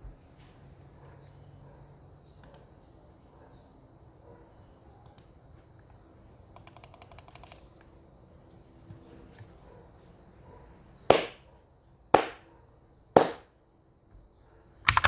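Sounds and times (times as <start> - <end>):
clicky keyboard typing: 2.4 - 2.7, 6.6 - 7.7.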